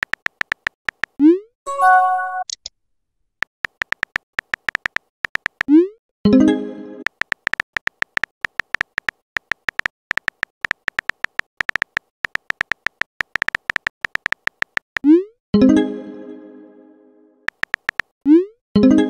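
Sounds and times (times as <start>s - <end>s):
message notification chime: 1.7s - 2.5s.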